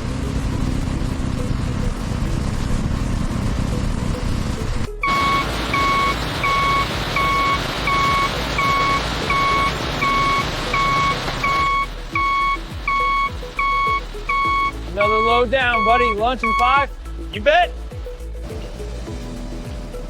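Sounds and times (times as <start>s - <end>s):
vehicle engine running: 0.0s - 20.0s
reversing alarm beeping: 5.0s - 16.8s.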